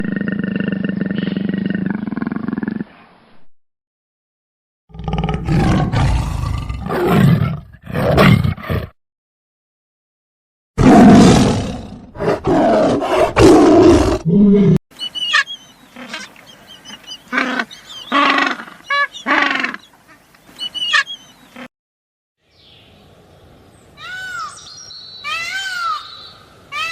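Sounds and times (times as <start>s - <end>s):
big cat roaring: 4.9s - 8.9s, 10.8s - 14.8s
high bird-like chirps: 15.0s - 18.2s, 18.8s - 21.6s.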